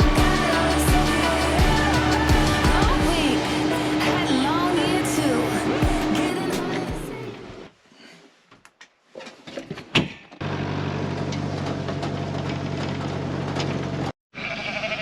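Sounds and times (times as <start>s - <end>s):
vehicle engine droning: 0.0s - 7.7s, 10.4s - 14.1s.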